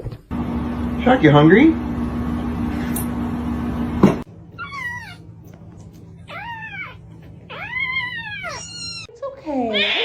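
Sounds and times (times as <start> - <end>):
cat meowing: 6.3 - 9.1.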